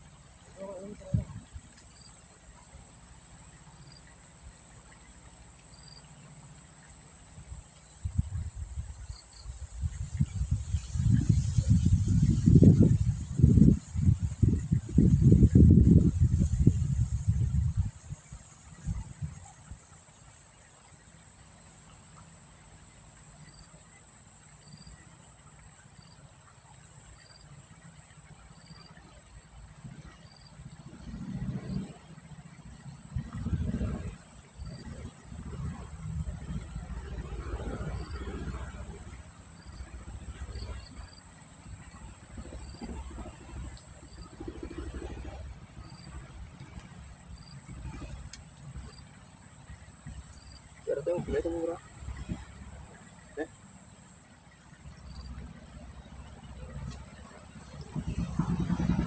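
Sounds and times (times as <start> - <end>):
insects droning: 0.0 - 59.0
low rumble: 32.6 - 41.0, 55.0 - 59.0
low rumbling thumps: 56.8 - 59.0.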